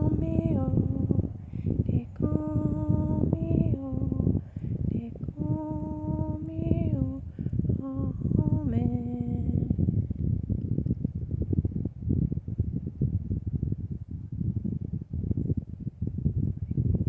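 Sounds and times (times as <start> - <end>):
woman humming: 0.0 - 9.7
low rumbling noise with crackles: 0.0 - 17.0.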